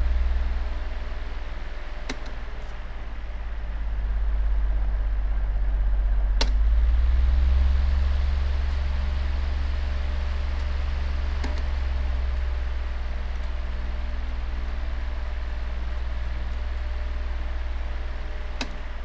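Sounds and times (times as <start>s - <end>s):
fan switch clicks: 2.0s - 2.4s, 6.4s - 6.6s, 11.4s - 11.7s, 18.6s - 18.9s.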